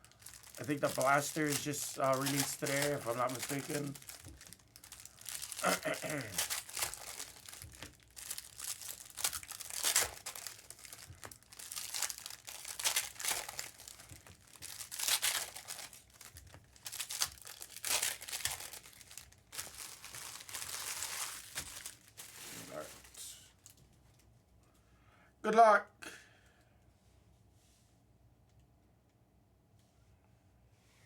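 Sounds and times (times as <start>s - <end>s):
wrappers crinkling and tearing: 0.0s - 23.8s.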